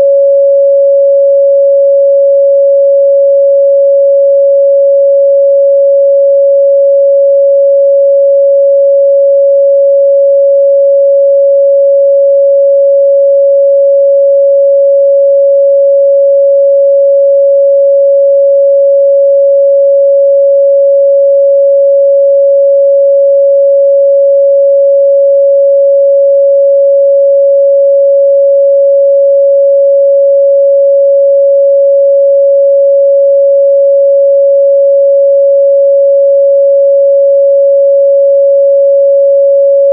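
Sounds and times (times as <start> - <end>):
sine wave test tone: 0.0 - 39.9.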